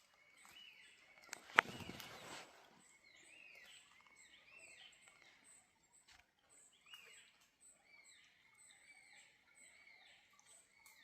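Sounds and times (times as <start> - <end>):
soft rustle: 1.2 - 2.8.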